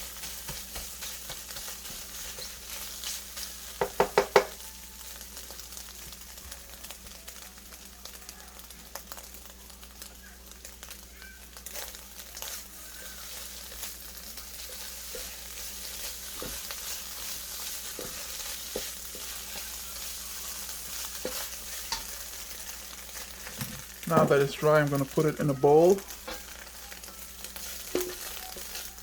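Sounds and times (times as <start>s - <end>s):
eggs sizzling in oil: 0.0s - 29.0s
utensil stirring and scraping: 12.4s - 24.5s.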